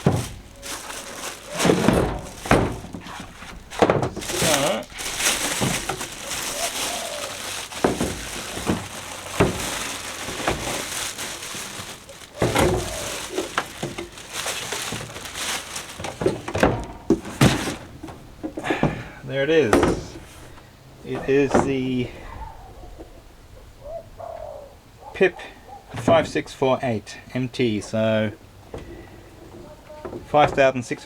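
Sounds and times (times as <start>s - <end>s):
knocks and thuds in box: 0.0s - 20.4s
foam packing crinkling: 0.0s - 22.2s.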